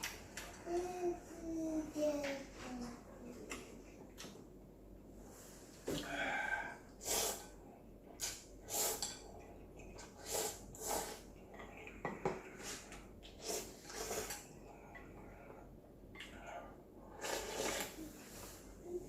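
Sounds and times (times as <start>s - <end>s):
person slurping noodles: 7.0s - 7.6s, 10.0s - 11.3s, 12.6s - 14.4s, 17.1s - 18.4s.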